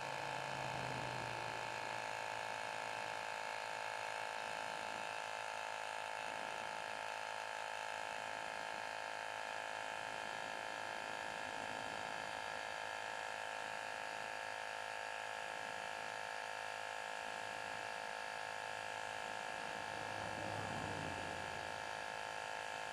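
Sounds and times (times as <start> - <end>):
tire inflator buzzing: 16.6 - 22.9.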